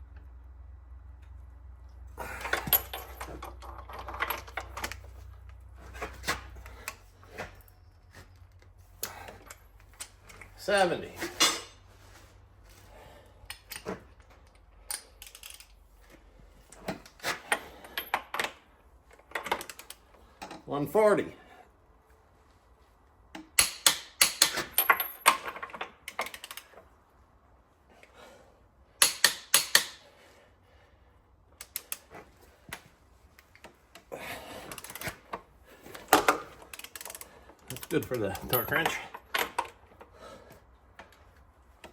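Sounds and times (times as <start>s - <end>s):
wrench and socket clicking: 14.9s - 15.8s, 23.4s - 26.7s, 29.0s - 30.0s.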